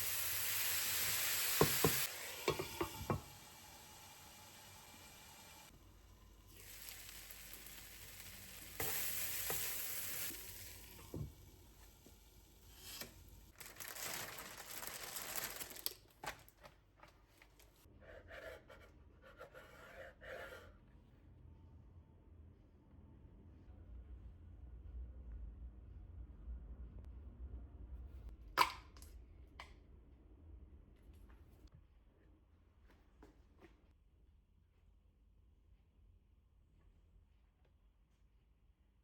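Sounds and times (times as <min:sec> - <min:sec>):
food sizzling in a frying pan: 0:00.0 - 0:05.7, 0:06.4 - 0:15.9.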